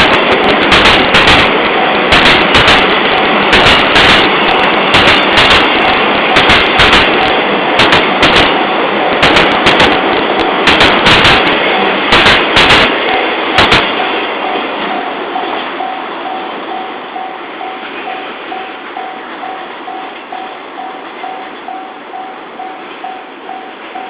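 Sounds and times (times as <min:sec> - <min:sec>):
train wheels clacking over rail joints: 0:00.0 - 0:16.4
level crossing bell dinging: 0:14.0 - 0:24.0.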